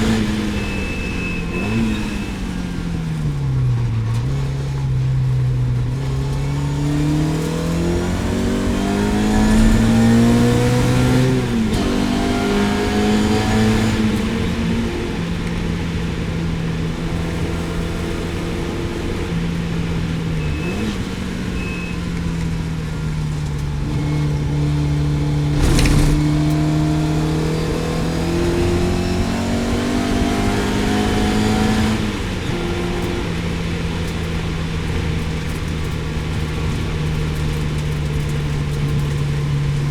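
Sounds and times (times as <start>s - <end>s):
race car engine revving: 5.9s - 22.6s, 23.2s - 39.2s
sharp bang: 8.8s - 11.8s, 25.5s - 26.8s.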